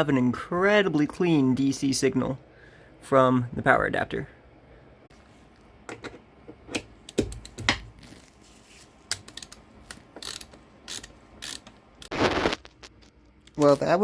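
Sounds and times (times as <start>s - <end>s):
ratchet clicking: 10.2s - 11.8s.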